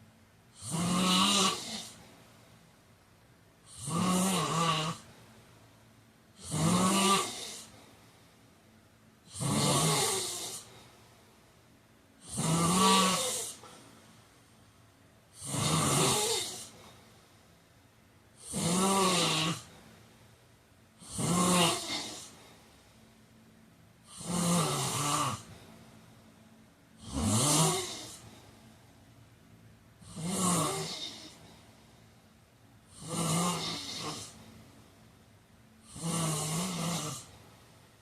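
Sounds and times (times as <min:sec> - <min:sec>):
man snoring: 0:00.6 - 0:02.0, 0:03.7 - 0:05.1, 0:06.4 - 0:07.8, 0:09.3 - 0:10.7, 0:12.2 - 0:13.7, 0:15.3 - 0:16.8, 0:18.4 - 0:19.7, 0:21.0 - 0:22.4, 0:24.0 - 0:25.5, 0:27.0 - 0:28.3, 0:30.0 - 0:31.4, 0:32.9 - 0:34.4, 0:35.8 - 0:37.4.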